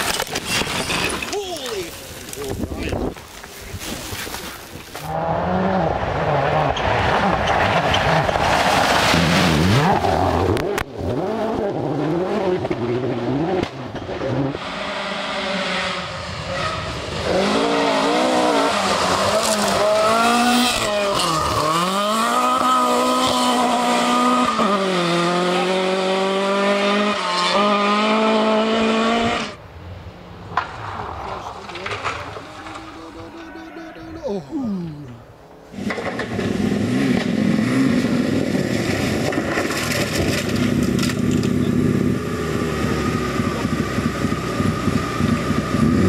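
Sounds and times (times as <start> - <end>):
rally car engines revving: 5.0 - 29.6, 35.7 - 46.0.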